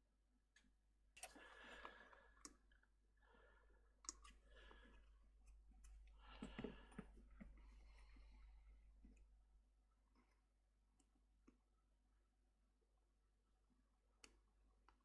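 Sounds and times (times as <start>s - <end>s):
faint clicks of small objects: 4.0s - 8.4s.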